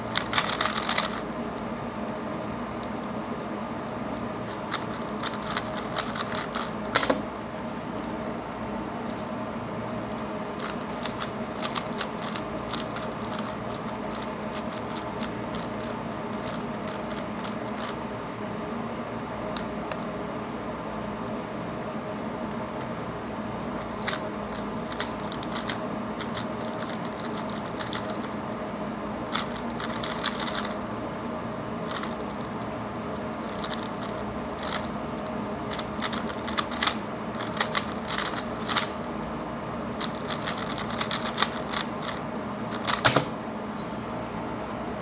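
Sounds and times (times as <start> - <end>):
steady hum: 0.0 - 45.0
plastic cube clicking and clacking: 0.1 - 1.3, 4.5 - 7.2, 10.6 - 18.0, 23.8 - 28.4, 29.3 - 30.8, 31.8 - 32.4, 33.4 - 34.9, 35.7 - 39.0, 40.0 - 43.3.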